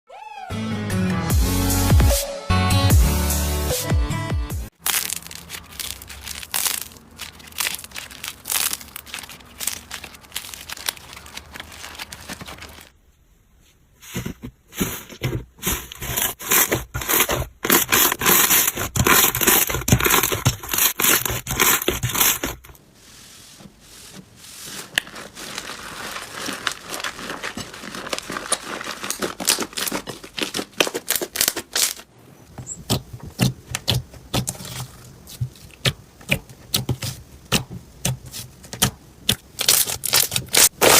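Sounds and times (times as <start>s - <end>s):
slime crackling and popping: 4.8s - 12.9s, 25.0s - 32.0s.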